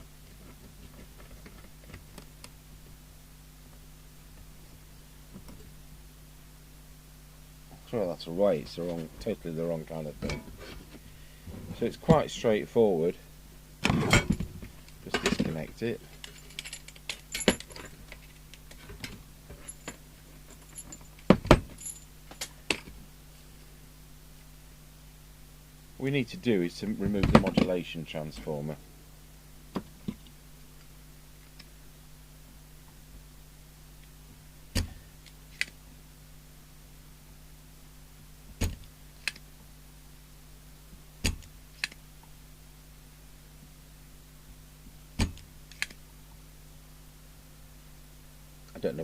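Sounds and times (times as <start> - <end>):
faint steady hum: 0.0 - 49.0.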